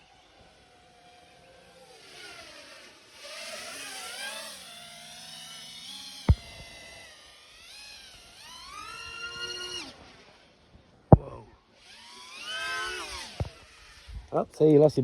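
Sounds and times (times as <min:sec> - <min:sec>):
drone motors whining: 0:00.0 - 0:14.3
sharp knock: 0:06.3 - 0:06.6.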